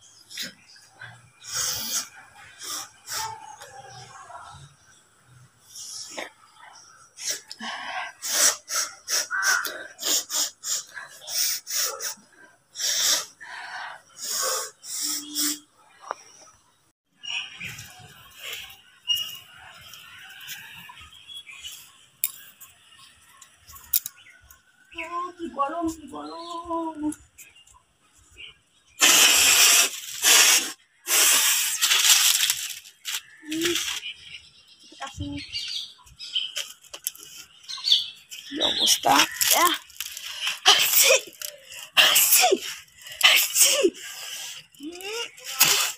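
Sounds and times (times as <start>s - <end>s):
person blowing congested nose: 29.0s - 32.2s.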